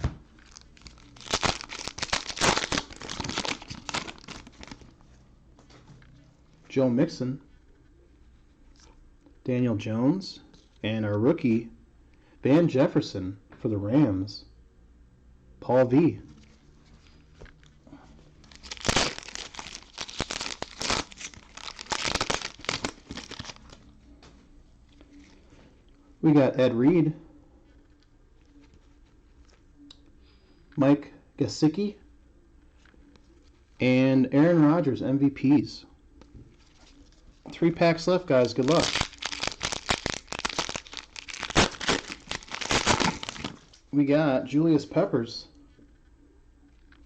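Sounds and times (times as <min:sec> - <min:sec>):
cellophane wrapper crinkling: 0:00.3 - 0:05.0, 0:16.4 - 0:23.8, 0:38.3 - 0:43.8.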